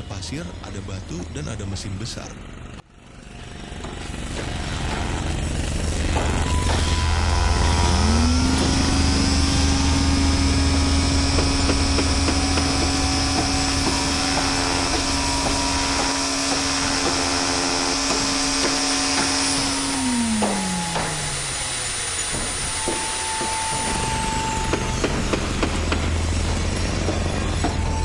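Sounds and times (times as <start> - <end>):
motor whine: 2.4 - 28.0
low rumble: 4.1 - 17.4.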